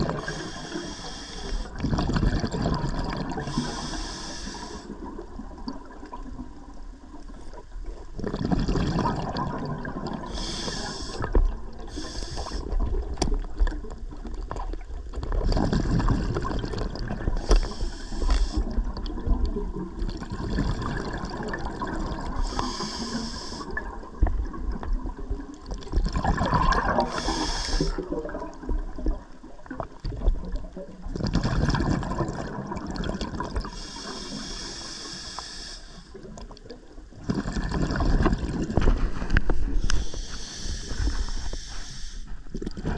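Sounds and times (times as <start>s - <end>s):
exhaled air bubbling: 0.0s - 42.9s
regulator inhale hissing: 0.2s - 1.8s, 3.4s - 5.0s, 10.3s - 12.8s, 17.3s - 18.8s, 22.3s - 23.8s, 27.0s - 28.1s, 33.6s - 36.2s, 39.7s - 42.5s.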